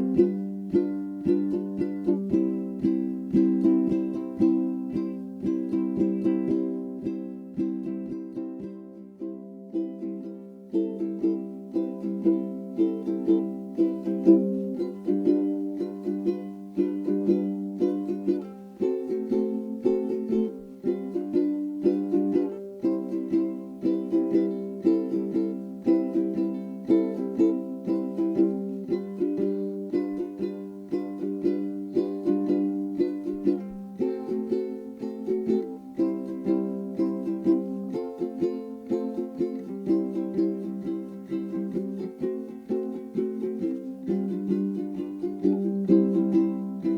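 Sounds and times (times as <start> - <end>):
ukulele strumming chords: 0.0 - 46.9.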